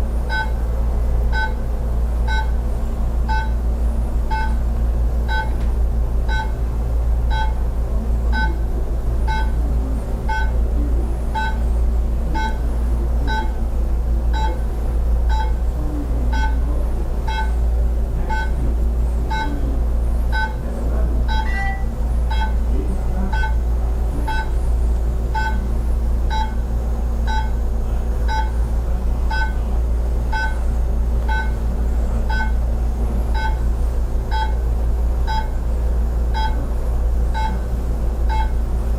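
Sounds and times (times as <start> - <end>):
steady low hum: 0.0 - 38.9
electronic beeps: 3.3 - 3.6, 4.3 - 4.6, 5.3 - 5.6, 6.3 - 6.6, 7.3 - 7.6, 8.3 - 8.6, 9.3 - 9.6, 10.3 - 10.6, 11.4 - 11.6, 12.4 - 12.6, 13.3 - 13.6, 14.3 - 14.6, 15.3 - 15.6, 16.3 - 16.6, 17.3 - 17.6, 18.3 - 18.6, 20.3 - 20.6, 21.3 - 22.6, 23.3 - 23.6, 24.3 - 24.5, 25.4 - 25.7, 26.3 - 26.6, 27.3 - 27.6, 28.3 - 28.6, 29.3 - 29.6, 30.3 - 30.6, 31.3 - 31.6, 32.3 - 32.6, 33.3 - 33.6, 34.3 - 34.6, 35.3 - 35.5, 36.4 - 36.6, 37.4 - 37.6, 38.3 - 38.6.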